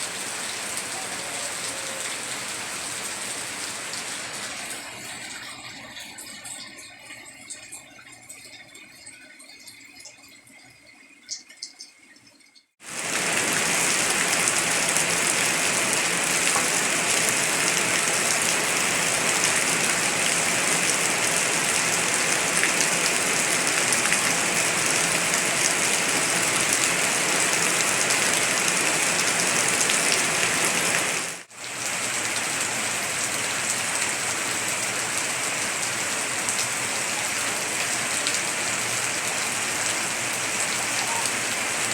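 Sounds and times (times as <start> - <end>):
heavy rain pouring: 0.0 - 6.5, 12.8 - 41.9.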